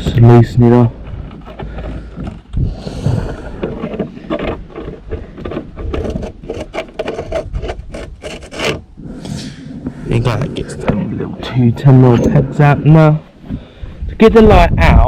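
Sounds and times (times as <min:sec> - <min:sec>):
socket scraping: 0:00.0 - 0:13.8.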